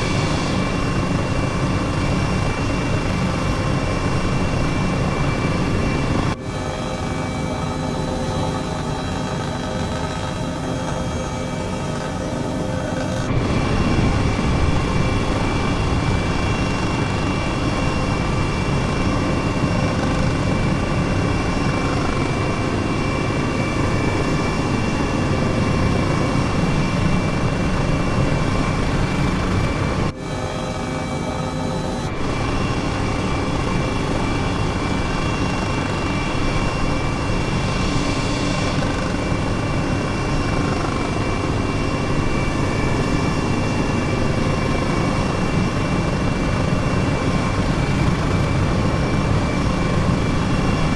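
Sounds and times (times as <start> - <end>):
helicopter rotor and engine rumble: 0.0 - 50.9
high turbine whine: 0.0 - 50.9.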